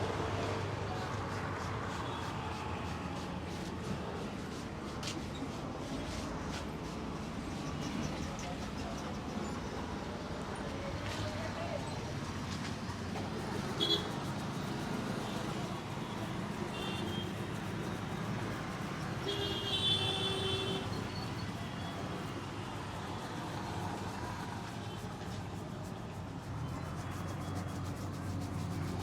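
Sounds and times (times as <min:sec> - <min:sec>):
roadside traffic noise: 0:00.0 - 0:29.0
vehicle horn: 0:13.8 - 0:14.1, 0:16.7 - 0:17.4, 0:19.2 - 0:21.0.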